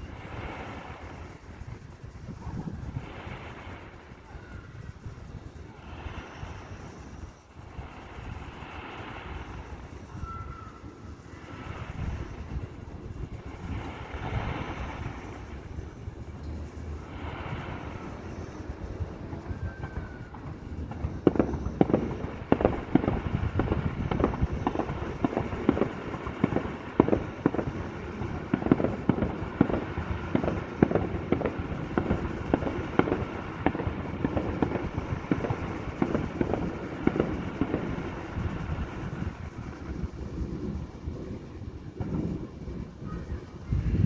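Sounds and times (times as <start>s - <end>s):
firework rising whistle: 0.0s - 44.0s
firework shells bursting: 0.0s - 44.0s.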